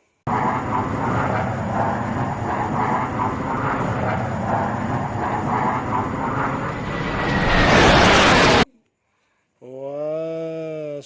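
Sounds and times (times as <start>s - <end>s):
jet engine roar: 0.0s - 8.7s.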